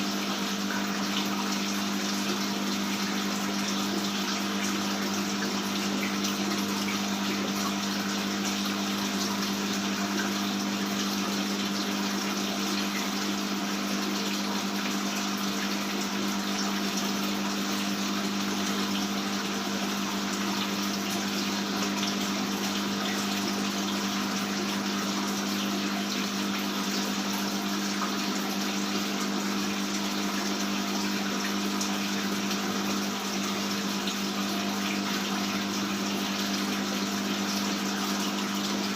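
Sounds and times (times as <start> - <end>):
water pump running: 0.0 - 38.9.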